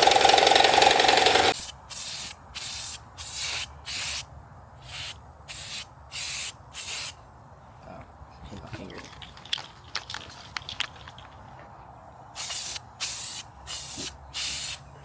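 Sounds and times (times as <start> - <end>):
motor running: 0.0 - 1.6
short hissing spray bursts: 1.5 - 7.2, 12.3 - 14.9.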